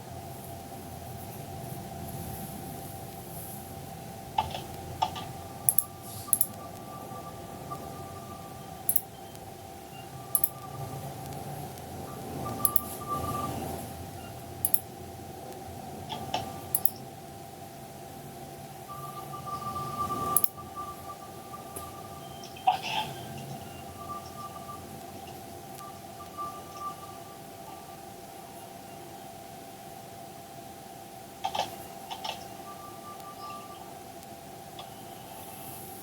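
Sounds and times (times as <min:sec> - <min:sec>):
electrical hum: 0:00.0 - 0:36.0
thin high whine: 0:00.0 - 0:36.0
mouse and keyboard clicks: 0:04.4 - 0:06.6, 0:10.3 - 0:11.4, 0:12.6 - 0:12.9, 0:14.6 - 0:14.8, 0:16.1 - 0:17.0, 0:31.4 - 0:32.6.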